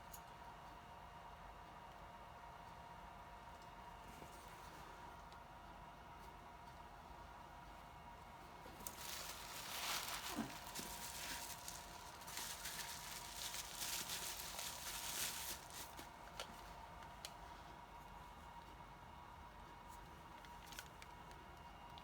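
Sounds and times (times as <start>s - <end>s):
faint steady whine: 0.0s - 22.0s
packing material rustling: 8.7s - 16.5s.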